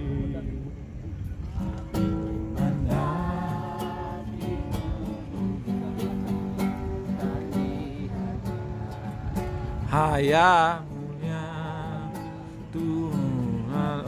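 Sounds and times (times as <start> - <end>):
strummed acoustic guitar: 0.0 - 14.0
person singing worship song: 1.6 - 14.0.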